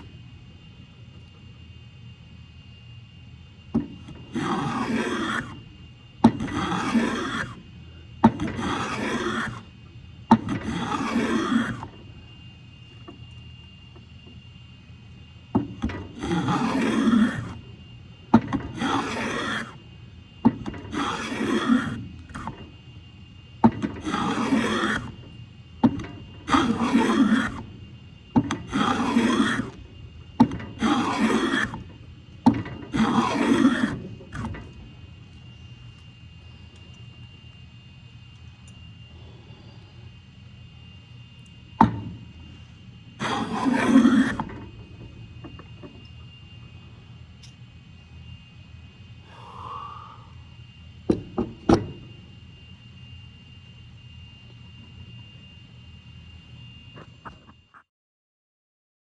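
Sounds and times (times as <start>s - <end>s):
hand plane shaving wood: 4.0s - 5.6s, 6.2s - 7.6s, 8.3s - 9.7s, 10.4s - 12.0s, 16.1s - 17.6s, 18.6s - 19.8s, 20.7s - 22.5s, 24.0s - 25.2s, 26.5s - 27.7s, 28.4s - 29.8s, 30.4s - 31.9s, 32.5s - 34.5s, 43.2s - 44.5s.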